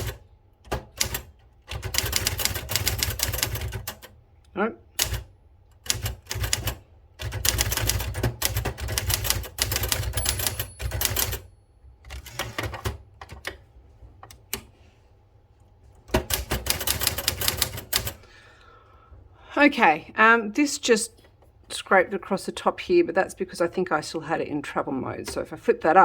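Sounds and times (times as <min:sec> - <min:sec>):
typewriter keys clacking: 0:05.8 - 0:13.6, 0:16.1 - 0:18.2.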